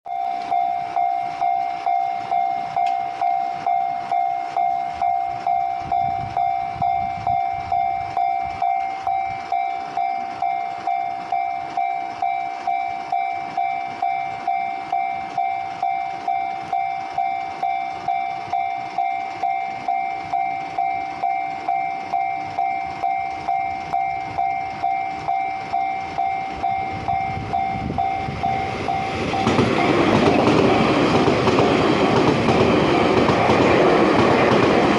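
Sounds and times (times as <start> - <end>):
level crossing bell ringing: 0.1 - 31.2
approaching train rushing: 0.1 - 34.9.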